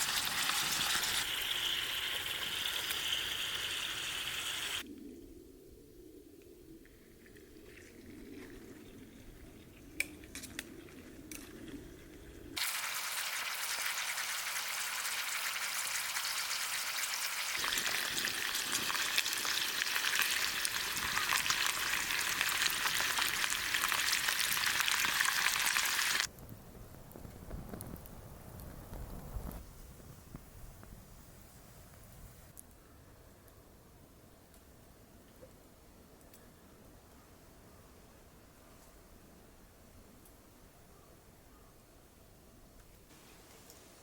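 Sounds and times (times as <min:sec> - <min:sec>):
meat sizzling in a frying pan: 0:00.0 - 0:04.8, 0:12.6 - 0:26.3.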